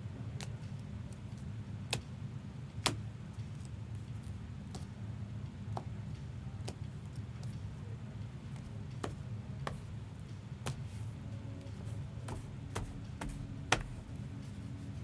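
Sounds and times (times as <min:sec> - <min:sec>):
steady low hum: 0:04.9 - 0:15.0.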